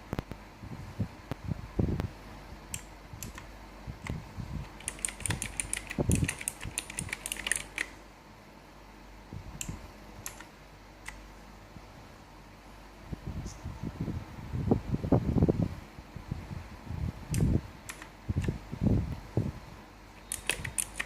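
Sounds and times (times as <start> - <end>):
mechanical keyboard clicking: 2.8 - 7.9, 9.6 - 10.5, 17.4 - 18.6, 20.2 - 21.0.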